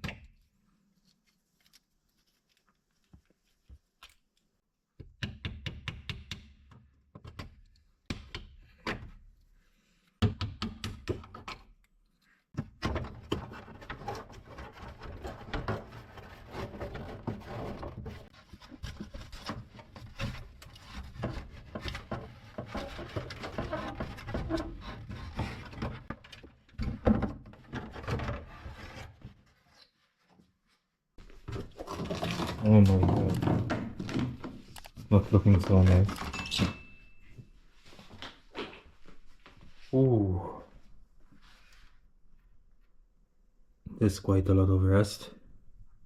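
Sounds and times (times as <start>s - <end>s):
rubbing and scraping: 13.1s - 26.6s, 27.4s - 30.4s, 31.2s - 36.2s.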